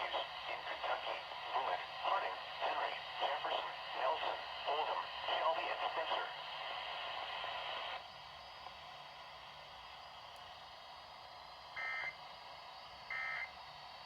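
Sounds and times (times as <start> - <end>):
radio static hiss: 0.0 - 8.0.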